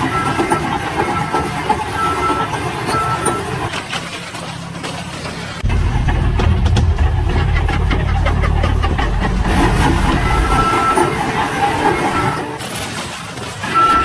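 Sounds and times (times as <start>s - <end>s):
heavy machine engine rumbling: 5.5s - 12.7s
clanking knocks: 5.6s - 12.5s.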